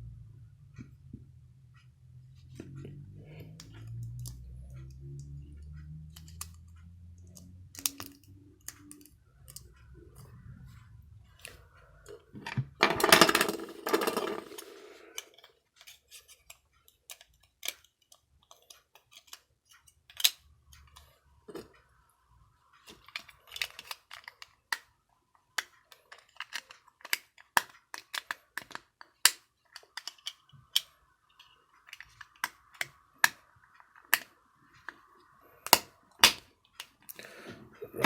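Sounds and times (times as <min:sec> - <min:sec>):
low hum: 0:00.0 - 0:05.7.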